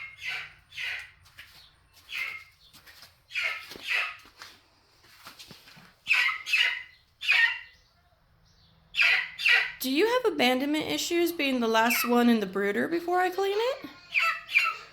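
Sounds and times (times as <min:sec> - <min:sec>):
young chicken squawking: 0:00.0 - 0:01.2, 0:03.3 - 0:04.2, 0:06.0 - 0:07.9, 0:08.9 - 0:09.8, 0:14.0 - 0:14.9.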